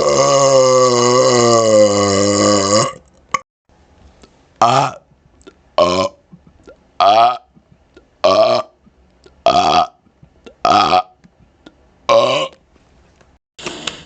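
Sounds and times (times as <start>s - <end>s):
man burping: 0.0s - 3.4s, 4.6s - 11.2s, 12.1s - 12.6s.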